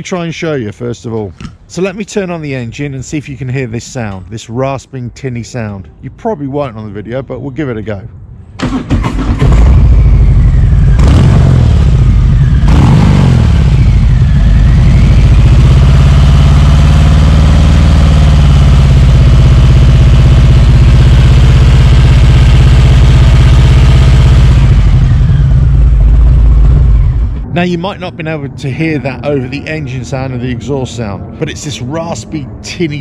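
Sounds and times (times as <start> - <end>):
motorcycle engine revving and idling: 8.7 - 27.5.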